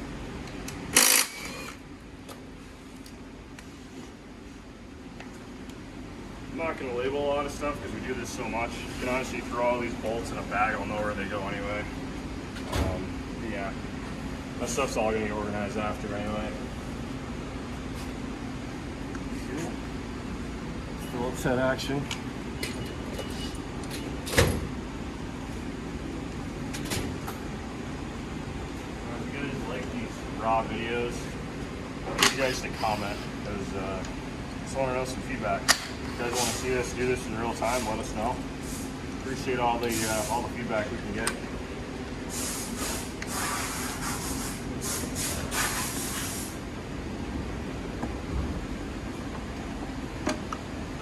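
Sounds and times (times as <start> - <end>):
steady low hum: 0.0 - 51.0
short hissing blasts: 42.3 - 46.6.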